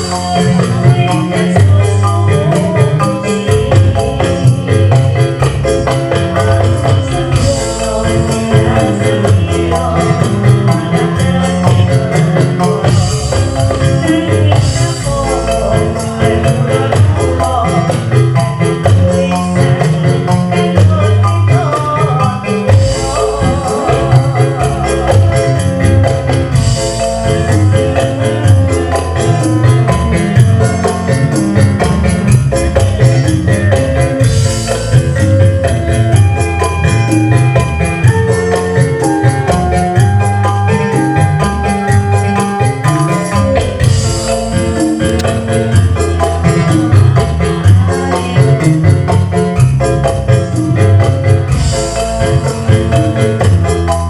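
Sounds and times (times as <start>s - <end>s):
fast percussion beat: 0.0s - 54.0s
live band music: 0.0s - 54.0s.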